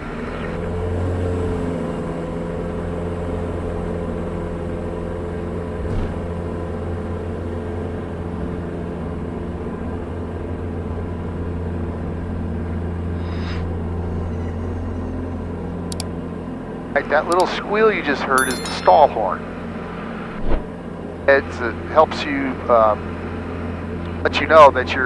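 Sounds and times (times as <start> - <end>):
aircraft engine drone: 6.9 - 25.0
click: 15.9 - 16.1.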